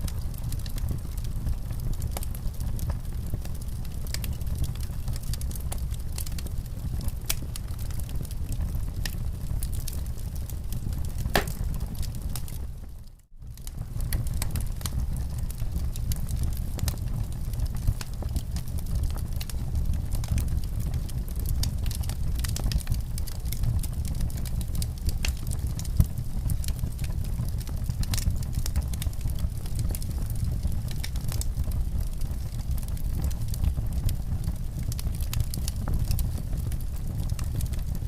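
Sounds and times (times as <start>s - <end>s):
fire crackling and popping: 0.0s - 38.0s.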